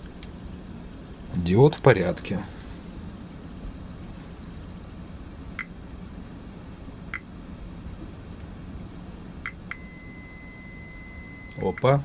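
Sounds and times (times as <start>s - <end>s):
multimeter buzzer chirps: 9.4s - 12.0s.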